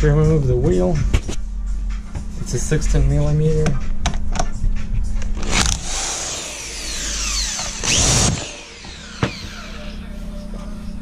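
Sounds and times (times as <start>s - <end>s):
power tool motor whine: 5.4s - 10.2s.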